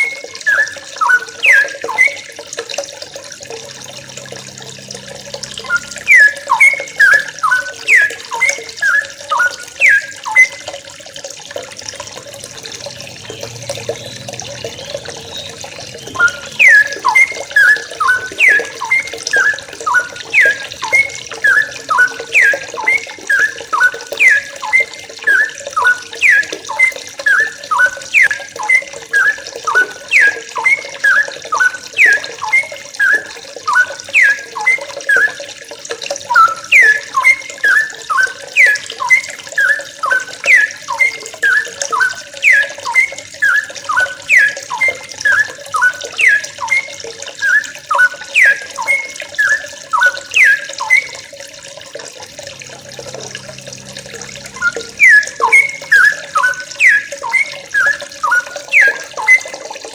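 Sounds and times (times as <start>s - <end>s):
running water: 0.0s - 59.9s
bulbuls chirping: 3.5s - 10.5s, 12.9s - 35.3s, 52.3s - 59.4s.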